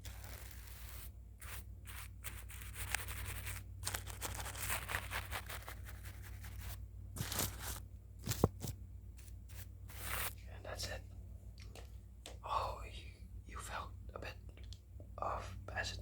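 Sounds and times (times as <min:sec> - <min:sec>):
pencil sketching strokes: 0:00.0 - 0:07.8, 0:09.2 - 0:10.4.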